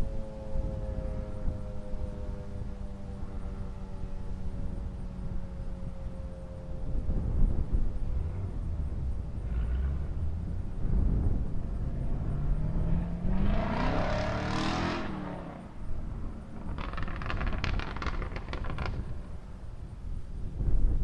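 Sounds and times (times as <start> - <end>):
wind rumble on microphone: 0.0 - 21.0
car passing by: 8.3 - 19.9
sharp clicks or rattles: 16.1 - 19.6.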